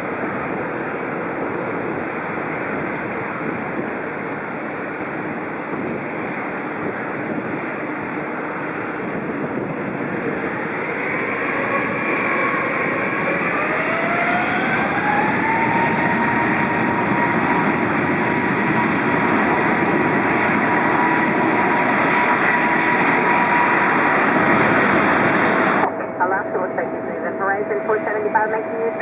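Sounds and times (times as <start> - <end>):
jet engines spooling up: 5.9 - 29.0.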